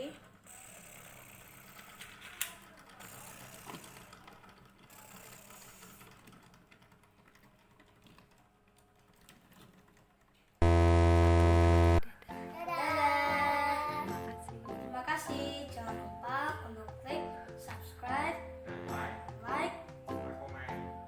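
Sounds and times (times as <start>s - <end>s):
spinning top whirring: 0.4s - 2.4s
loud steady tone: 10.6s - 12.1s.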